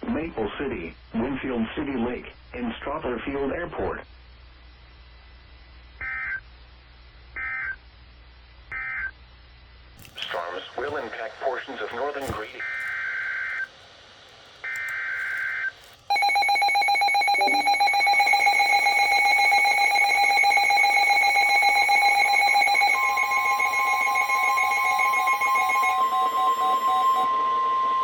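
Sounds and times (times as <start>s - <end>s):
screechy digital data tones: 14.6s - 28.0s
harsh electronic attention tone: 14.7s - 28.0s.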